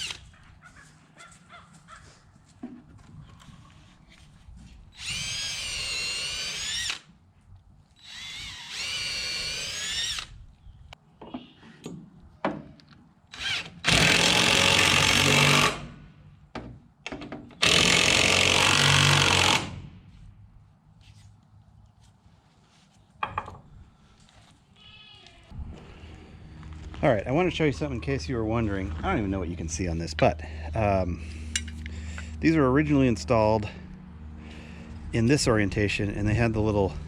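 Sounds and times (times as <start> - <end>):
power drill whining: 0.0 - 0.2, 4.9 - 7.1, 8.0 - 10.4, 13.3 - 15.9, 17.6 - 19.8.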